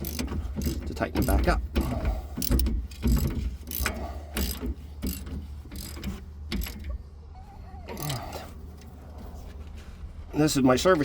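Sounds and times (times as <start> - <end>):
socket ratchet clicking: 0.0 - 1.4, 2.4 - 6.8.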